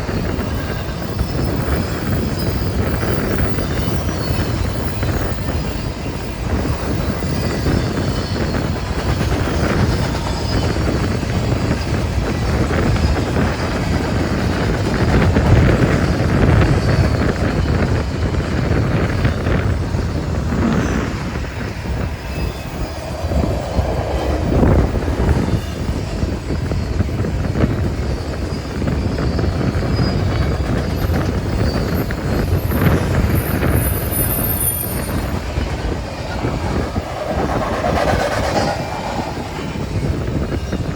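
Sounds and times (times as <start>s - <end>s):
high wheel squeal: 15.7s - 40.9s.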